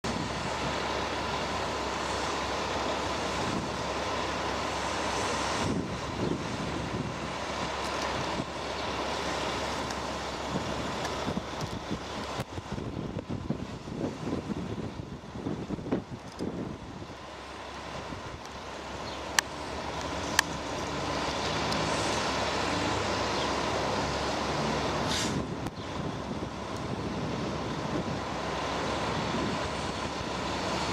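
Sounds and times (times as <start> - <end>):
wind noise on microphone: 0.0 - 1.6, 3.1 - 4.0, 4.6 - 18.4, 19.0 - 30.9
fire engine rumbling: 0.0 - 30.9
brief hiss: 25.1 - 25.5.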